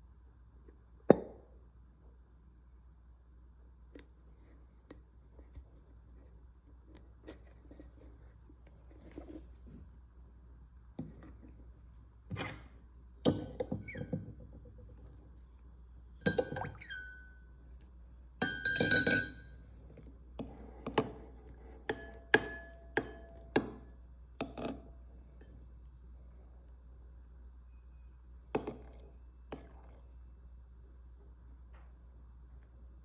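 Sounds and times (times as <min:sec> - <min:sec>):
utensil clinking against glass bowl: 0:16.2 - 0:17.4, 0:18.4 - 0:19.6.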